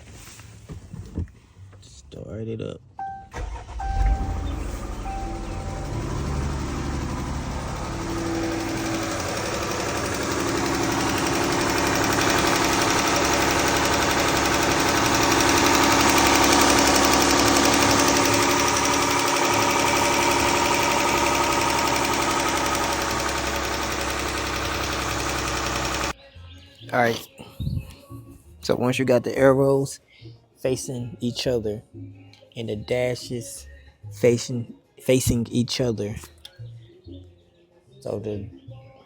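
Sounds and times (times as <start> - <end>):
car engine running: 3.1 - 26.2
engine ticking: 3.1 - 26.2.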